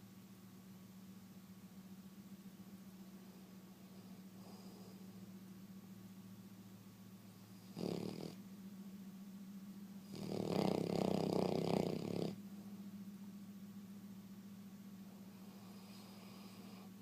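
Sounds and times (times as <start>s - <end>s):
dog snoring: 3.4s - 5.2s, 7.3s - 8.4s, 10.0s - 12.4s, 15.3s - 17.0s.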